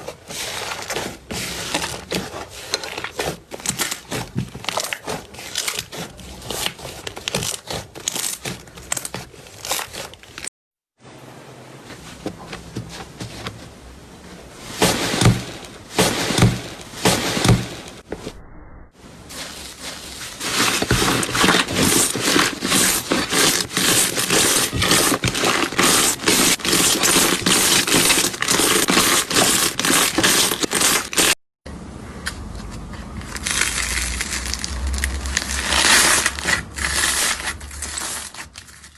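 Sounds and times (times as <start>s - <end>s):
slime crackling and popping: 33.3s - 38.5s.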